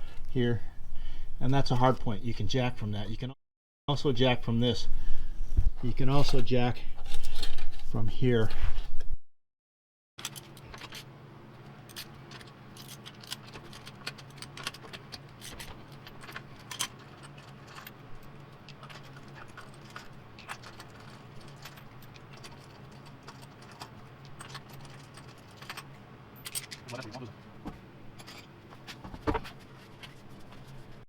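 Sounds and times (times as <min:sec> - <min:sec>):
metal tools clinking: 0:11.9 - 0:27.3, 0:28.2 - 0:28.5.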